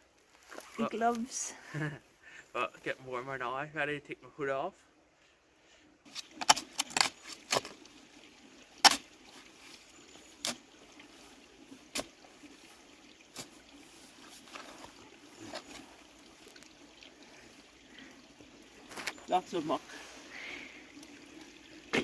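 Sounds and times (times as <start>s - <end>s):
faint water trickle: 0.1s - 22.0s
spade scraping in wet muck: 6.1s - 7.9s, 8.8s - 16.6s.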